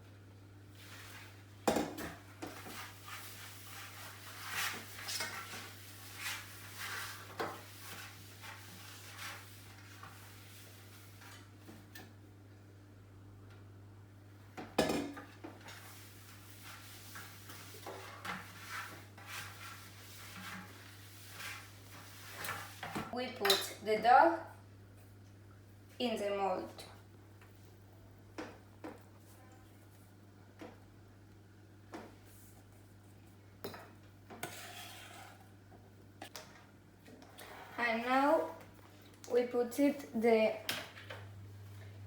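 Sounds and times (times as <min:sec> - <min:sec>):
kitchenware clinking and scraping: 0:33.8 - 0:35.5.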